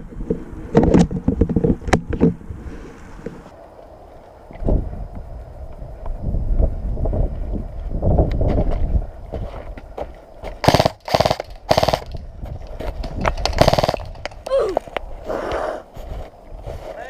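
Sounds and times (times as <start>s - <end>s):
airsoft guns automatic fire: 10.6s - 12.2s, 13.4s - 14.2s.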